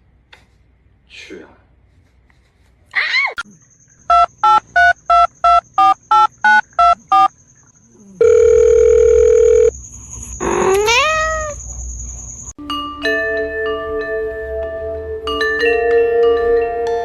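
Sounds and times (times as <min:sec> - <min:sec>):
long steady beep: 0:04.1 - 0:07.3, 0:08.2 - 0:09.7
short electronic beeps: 0:04.1 - 0:07.3.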